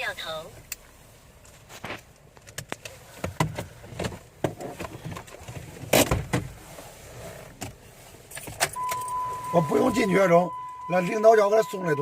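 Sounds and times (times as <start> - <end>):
clicks and knocks inside car: 2.0 - 6.6.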